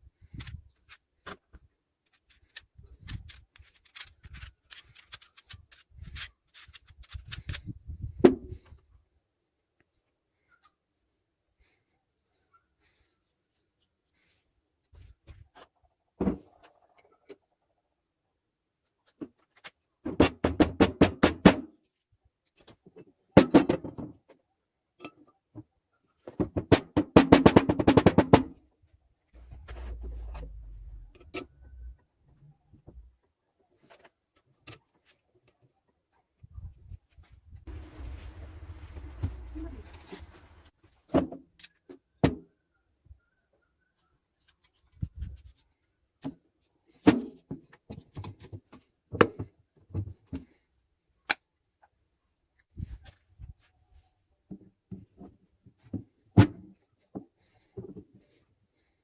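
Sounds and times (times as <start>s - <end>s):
metal parts and tools clinking: 0.2s - 7.8s.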